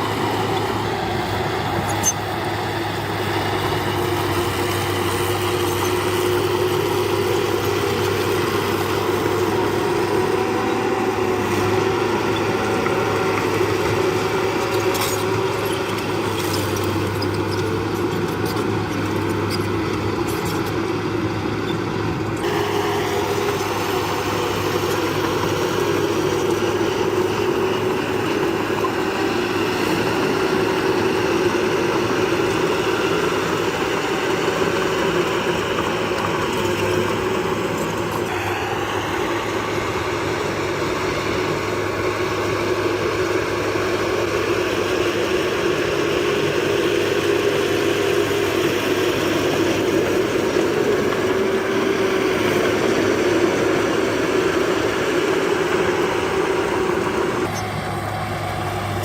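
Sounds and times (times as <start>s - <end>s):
heavy machinery diesel engine: 0.0s - 59.0s.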